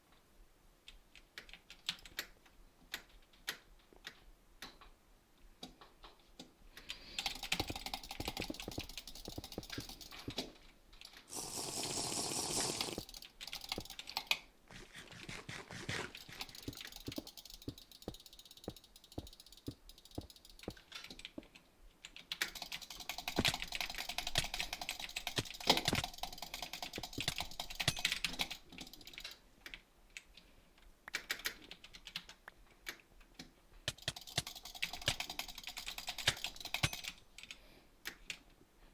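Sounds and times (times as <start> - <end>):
typing on computer keyboard: 1.1 - 4.9, 5.6 - 11.3, 12.5 - 14.4, 15.2 - 30.5, 31.1 - 38.5
steady hiss-like noise: 11.3 - 13.3.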